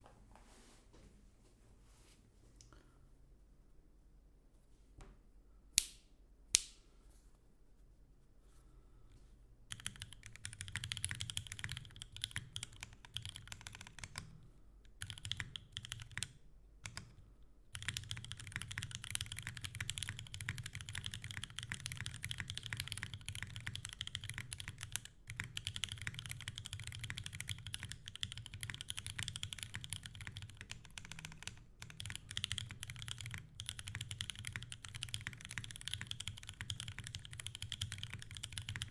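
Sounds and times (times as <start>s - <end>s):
mechanical keyboard typing: 9.7s - 17.2s, 17.8s - 38.9s.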